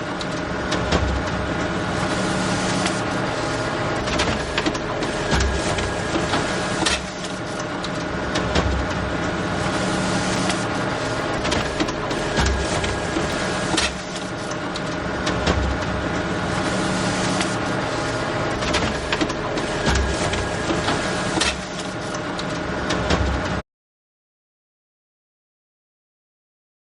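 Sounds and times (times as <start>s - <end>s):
photocopier whirring: 0.0s - 23.2s
photocopier low thumps: 4.1s - 6.9s, 11.2s - 13.9s.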